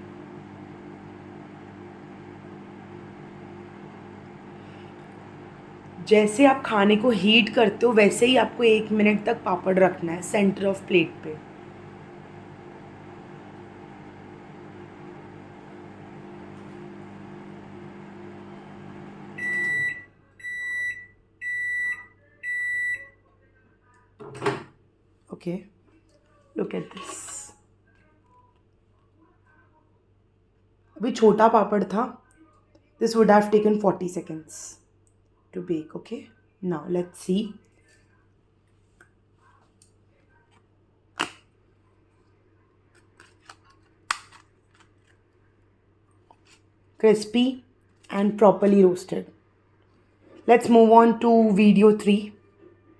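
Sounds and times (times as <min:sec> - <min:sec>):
microwave oven humming: 0:00.0 - 0:20.6
microwave beeps: 0:11.4 - 0:23.1.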